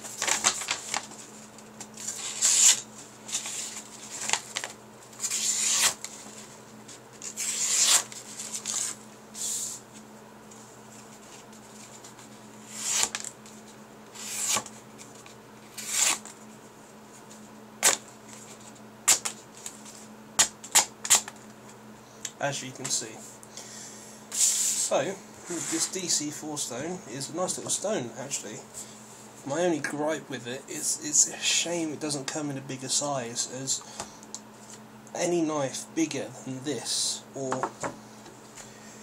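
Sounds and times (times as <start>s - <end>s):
knife slicing through paper: 5.2s - 6.0s, 7.2s - 9.0s, 14.2s - 14.7s, 15.7s - 16.3s.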